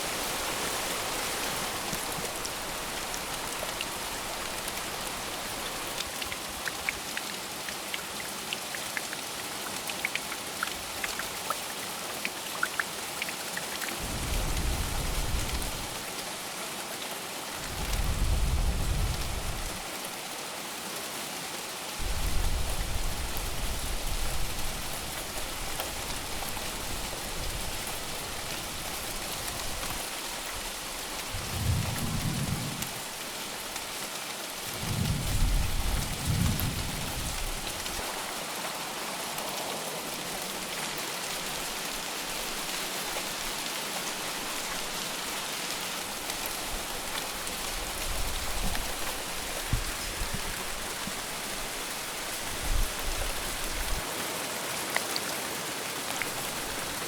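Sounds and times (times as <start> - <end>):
heavy rain: 0.0 - 57.0
raindrops ticking close by: 0.2 - 16.5, 17.5 - 20.3, 22.0 - 57.0
deep thunder rumbles: 14.0 - 16.0, 31.3 - 33.2, 34.7 - 38.0.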